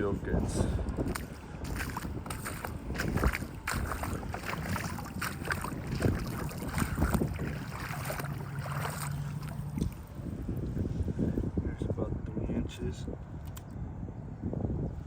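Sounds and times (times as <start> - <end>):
low steady hum: 0.0 - 15.0
wind buffeting microphone: 0.0 - 15.0
footsteps splashing through water: 1.0 - 10.1.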